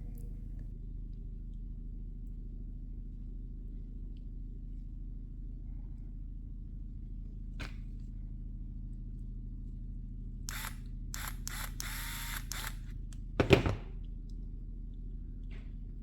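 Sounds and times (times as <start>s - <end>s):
low hum: 10.5s - 12.7s.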